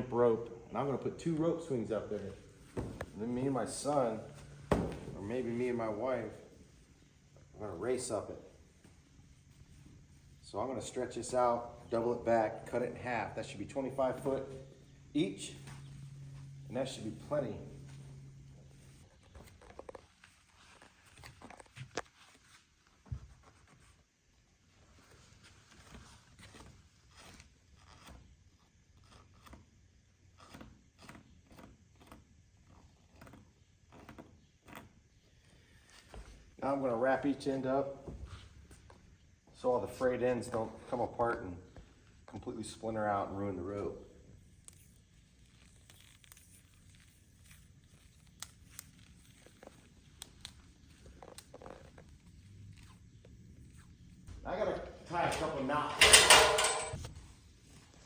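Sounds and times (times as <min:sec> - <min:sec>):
rope rustling: 0:17.8 - 0:29.6
rope rubbing and scraping: 0:17.8 - 0:35.2, 0:44.4 - 0:54.2.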